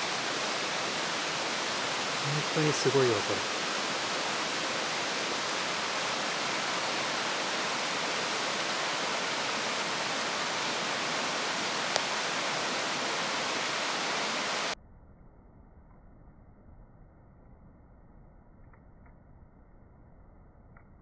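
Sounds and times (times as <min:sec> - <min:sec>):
fire crackle: 0:00.0 - 0:14.8
firewood burning with rushing hiss: 0:00.0 - 0:14.8.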